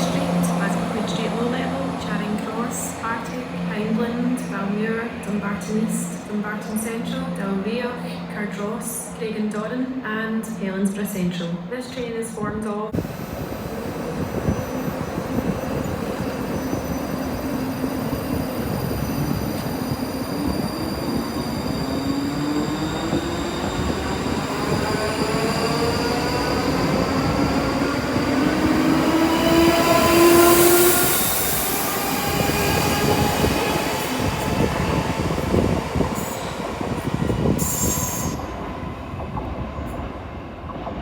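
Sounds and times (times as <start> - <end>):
train drive whine: 0.0 - 11.1, 12.9 - 41.0
train wheels rumbling on rails: 12.9 - 41.0.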